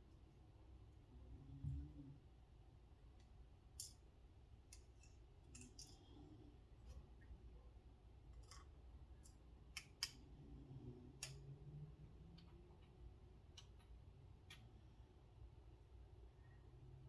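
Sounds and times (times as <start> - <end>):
small metal clicks and taps: 4.7 - 6.0, 8.3 - 10.2, 11.2 - 11.4.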